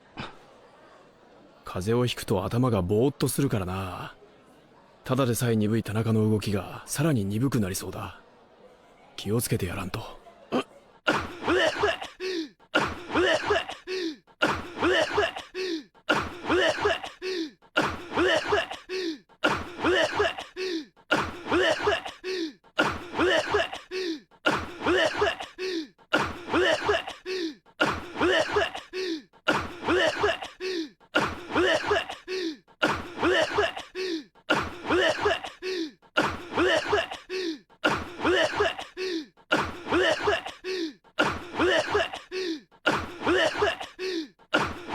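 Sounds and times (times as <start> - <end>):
young man coughing: 10.5 - 44.9.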